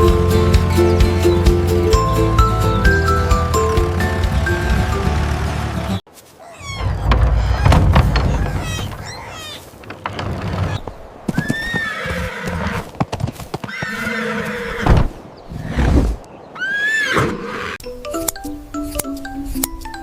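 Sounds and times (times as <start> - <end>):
hooves clopping: 0.0 - 6.0
horse whinnying: 11.4 - 12.9, 13.6 - 15.9, 16.6 - 17.8.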